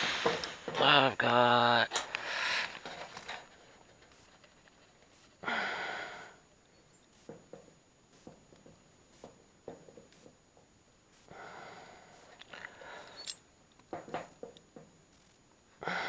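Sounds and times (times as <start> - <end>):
short breathy hiss: 0.0 - 0.7, 1.9 - 3.4, 4.0 - 6.5, 11.1 - 13.4.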